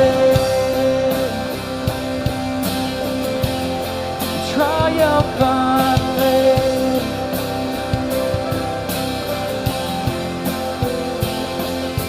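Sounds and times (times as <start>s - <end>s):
person singing: 0.0s - 1.9s, 4.4s - 8.6s
drum kit: 0.0s - 12.0s
electric guitar: 0.0s - 12.0s
rock band playing: 0.0s - 12.0s.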